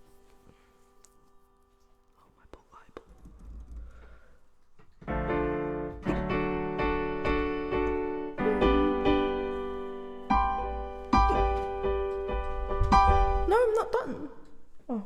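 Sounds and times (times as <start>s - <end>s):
piano chords: 0.0s - 2.1s, 5.0s - 14.3s.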